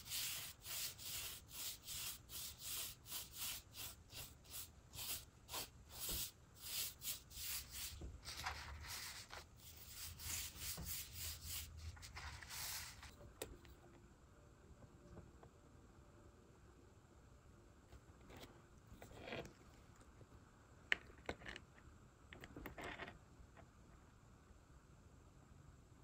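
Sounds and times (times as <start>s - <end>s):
hand sanding wood: 0.0s - 13.1s.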